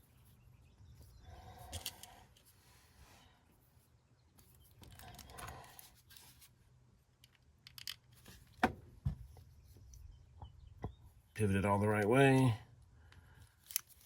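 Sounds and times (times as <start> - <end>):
small metal clicks: 1.7 - 2.5, 7.2 - 8.4, 13.1 - 14.0.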